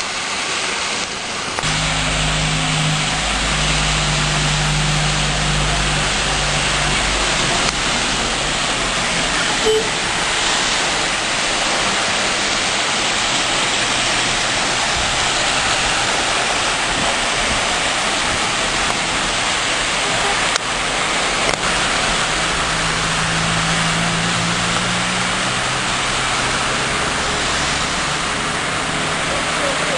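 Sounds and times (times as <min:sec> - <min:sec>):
heavy rain pouring: 0:00.0 - 0:29.9
low hum: 0:01.6 - 0:10.4.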